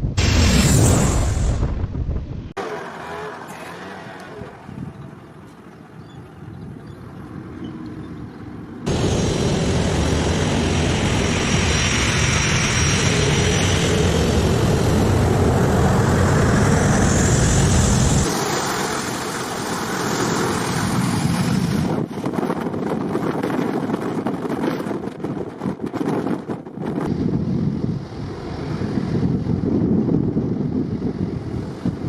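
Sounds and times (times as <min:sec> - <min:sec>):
high turbine whine: 0:06.8 - 0:23.0
jet engines roaring: 0:07.4 - 0:24.9, 0:27.0 - 0:32.0.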